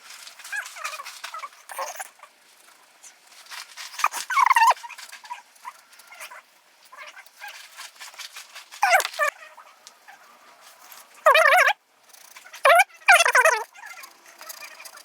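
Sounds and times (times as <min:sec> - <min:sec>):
animal warbling call: 0:00.5 - 0:02.2, 0:04.0 - 0:05.4, 0:08.7 - 0:10.2, 0:11.2 - 0:11.8, 0:12.5 - 0:15.0.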